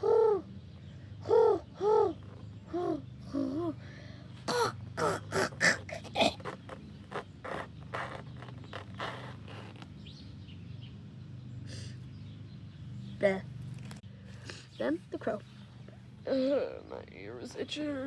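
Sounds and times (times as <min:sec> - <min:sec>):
woman imitating bird calls: 0:00.0 - 0:00.5, 0:01.2 - 0:03.8, 0:04.5 - 0:09.8.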